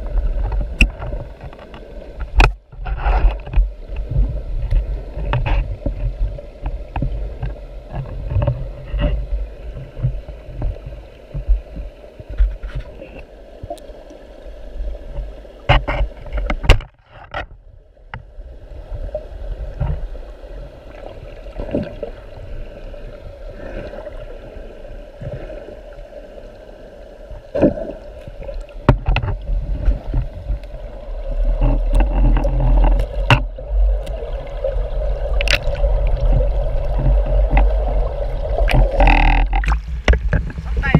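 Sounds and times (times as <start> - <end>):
underwater clicks and knocks: 0.0 - 13.9, 15.1 - 18.3, 28.5 - 40.9
muffled underwater rumble: 0.0 - 40.9.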